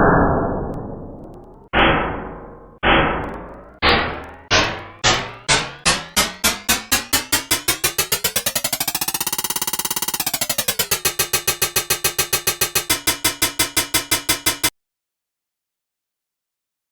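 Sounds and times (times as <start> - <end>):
synthesized metallic percussive hits: 1.2 - 14.7
ringing synth pitch: 3.2 - 14.7.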